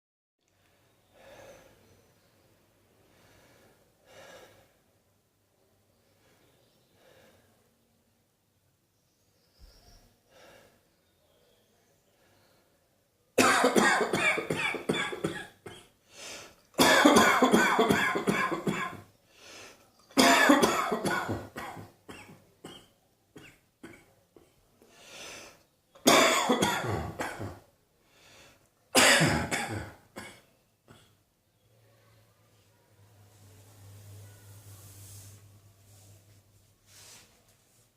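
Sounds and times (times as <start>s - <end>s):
person coughing hard: 13.4s - 15.9s, 16.8s - 19.0s, 20.2s - 24.1s, 26.0s - 27.6s, 29.0s - 31.1s.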